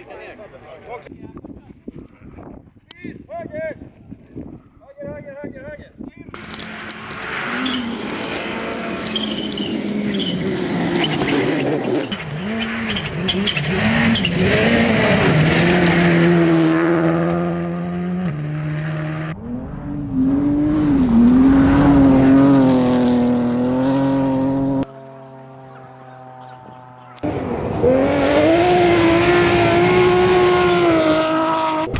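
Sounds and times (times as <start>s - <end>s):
gravel and tyre noise: 6.3s - 31.9s
rally car engine revving: 6.4s - 31.9s.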